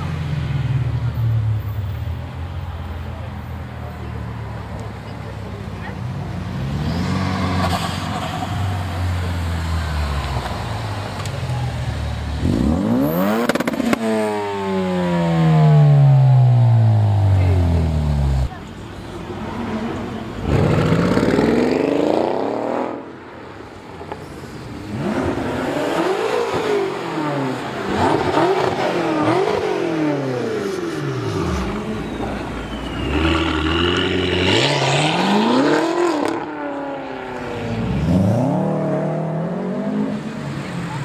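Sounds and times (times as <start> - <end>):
car engines revving: 0.0 - 41.0.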